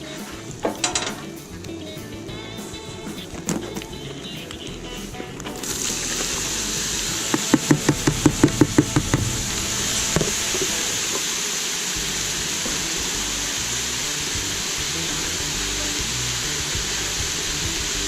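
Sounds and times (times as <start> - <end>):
vegetables sizzling in oil: 5.5 - 18.0
quick knocks: 7.3 - 11.2.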